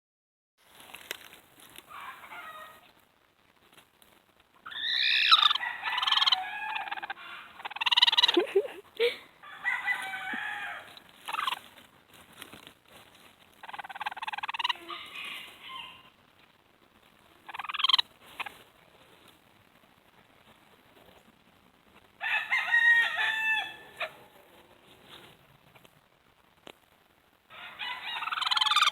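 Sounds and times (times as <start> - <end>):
rooster crowing and clucking: 1.9 - 2.9, 4.7 - 11.6, 13.6 - 16.2, 22.2 - 24.5, 27.5 - 28.9.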